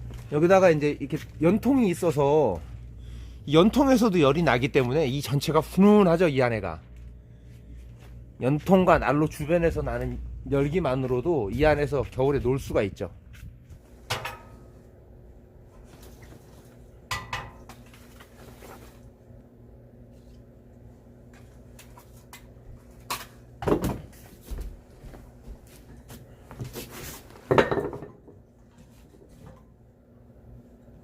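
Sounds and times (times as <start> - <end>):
objects knocking and clattering: 27.4 - 28.4.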